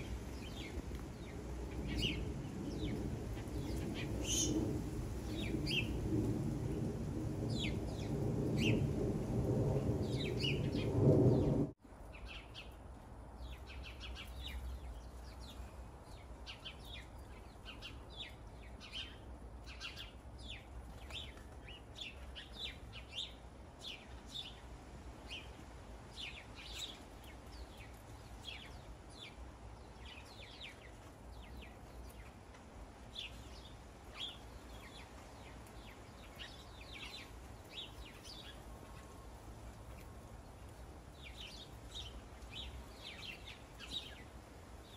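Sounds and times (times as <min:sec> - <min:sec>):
birds chirping: 0:00.0 - 0:06.1, 0:09.8 - 0:12.8
thunder rumble: 0:00.0 - 0:11.8
rain: 0:00.0 - 0:44.9.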